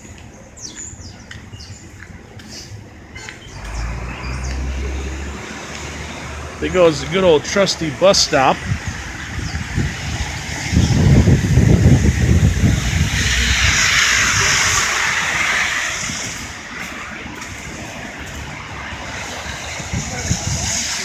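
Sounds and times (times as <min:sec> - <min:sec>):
vehicle tyre hiss passing: 0:03.5 - 0:07.5, 0:08.2 - 0:21.0
wind buffeting microphone: 0:08.5 - 0:21.0.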